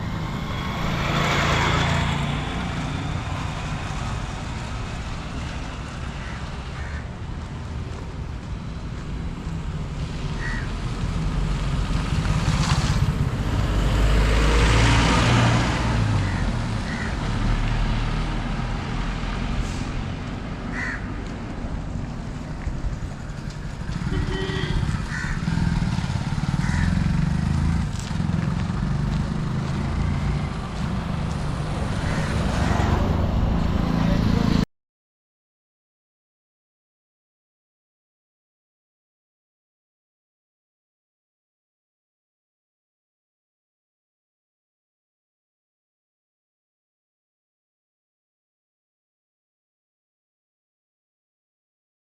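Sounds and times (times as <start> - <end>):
cars and motorcycles passing: 0.0 - 34.7.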